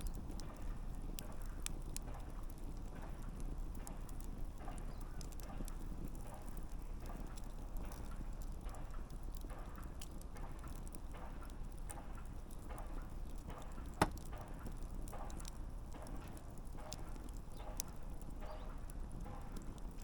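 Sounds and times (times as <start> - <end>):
campfire flames rumbling: 0.0 - 20.0
fire crackling: 0.0 - 20.0
sharp fire pop: 12.7 - 15.4.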